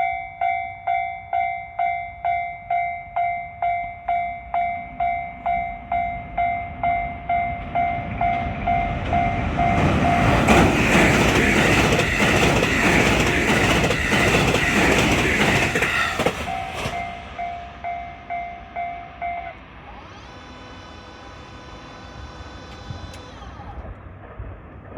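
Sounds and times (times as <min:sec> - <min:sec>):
level crossing bell clanging: 0:00.0 - 0:10.4, 0:16.5 - 0:19.6
train wheels clattering over rail joints: 0:07.6 - 0:17.6.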